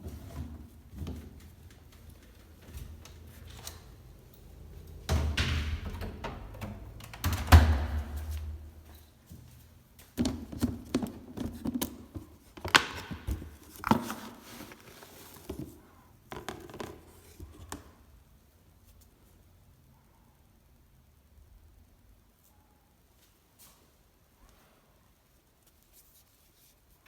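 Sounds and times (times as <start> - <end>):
rustling: 8.2 - 16.1, 22.4 - 27.0.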